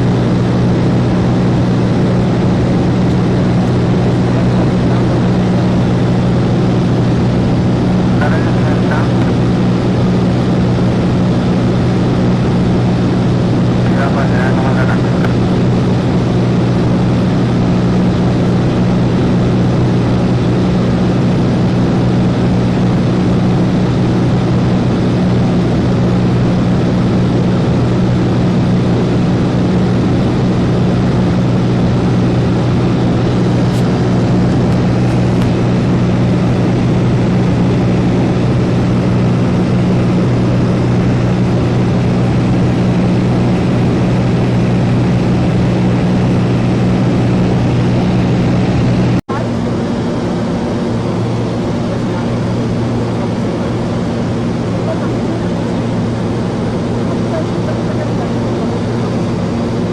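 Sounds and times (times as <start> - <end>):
airplane engine and propeller drone: 0.0 - 59.9.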